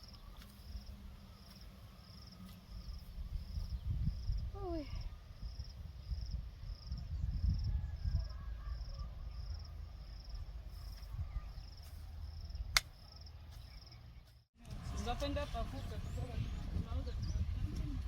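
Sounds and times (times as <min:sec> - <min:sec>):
insect chirping: 0:00.0 - 0:14.0
low rumble on microphone: 0:03.1 - 0:12.8, 0:14.6 - 0:18.0.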